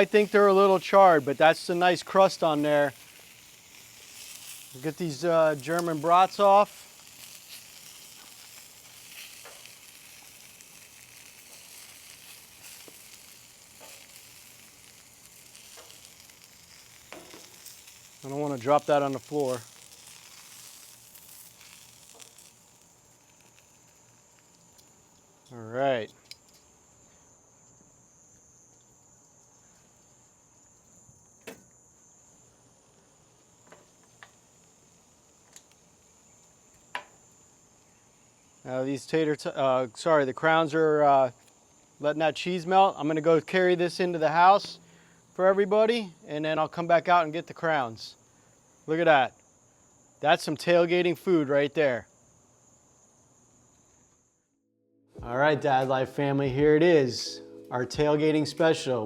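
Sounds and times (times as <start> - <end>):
food sizzling on a griddle: 0.0 - 25.5, 33.1 - 39.3
crickets chirping: 0.0 - 54.6, 55.2 - 59.0.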